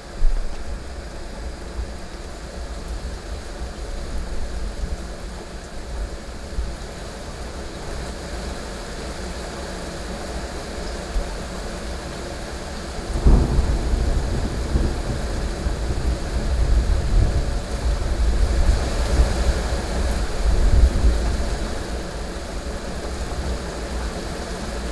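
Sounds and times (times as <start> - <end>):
heavy rain falling: 11.4 - 24.9
thunderclap and rolling thunder: 13.0 - 21.8.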